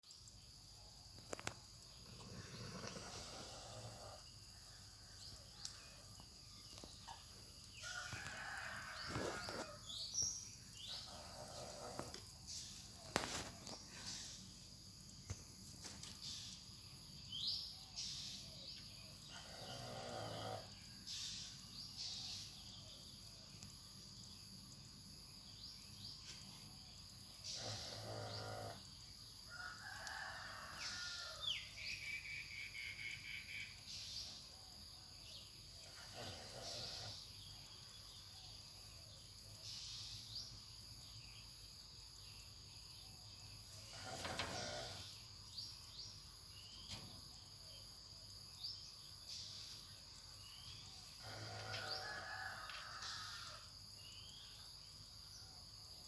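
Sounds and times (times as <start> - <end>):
dog snoring: 2.1 - 4.3, 10.8 - 12.2, 19.3 - 20.8, 27.5 - 28.8, 35.8 - 37.2, 43.8 - 45.2, 51.2 - 52.0.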